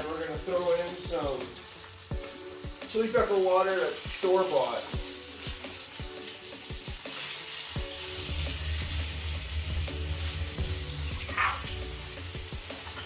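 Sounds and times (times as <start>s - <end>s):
background music: 0.0s - 13.0s
fish sizzling in hot oil: 0.0s - 13.0s.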